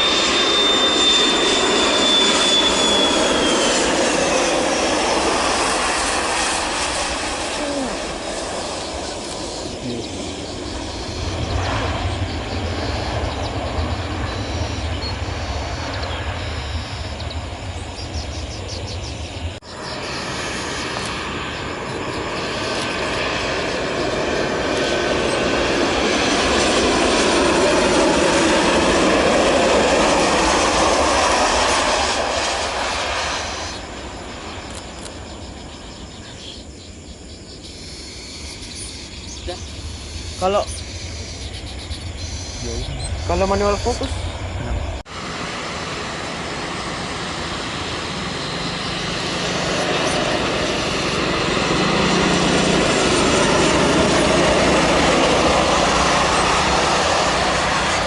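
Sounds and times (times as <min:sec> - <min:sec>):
jet airliner engine rushing: 0:00.0 - 0:58.0.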